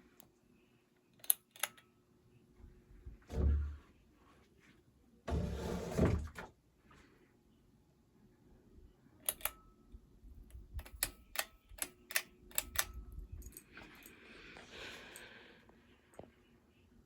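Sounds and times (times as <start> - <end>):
sharp irregular clicks: 10.5 - 13.6.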